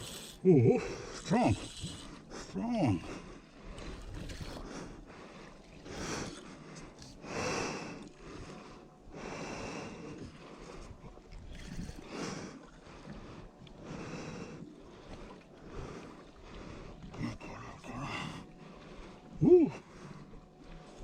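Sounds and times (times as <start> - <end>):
person breathing hard: 0.0 - 10.9.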